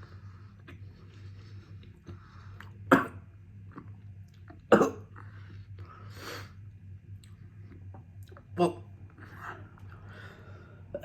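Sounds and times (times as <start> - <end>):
person coughing: 4.7 - 5.1.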